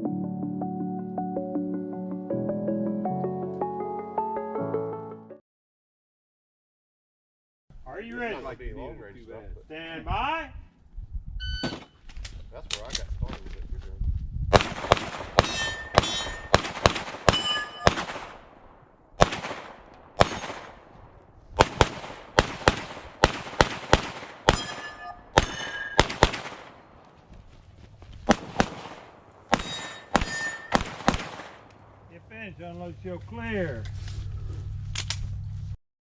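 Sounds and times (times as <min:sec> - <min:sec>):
gunshots in quick bursts: 0:14.5 - 0:27.2, 0:28.2 - 0:32.1
metallic ring of steel targets: 0:15.4 - 0:18.1, 0:20.2 - 0:21.0, 0:24.4 - 0:26.3, 0:29.5 - 0:31.1.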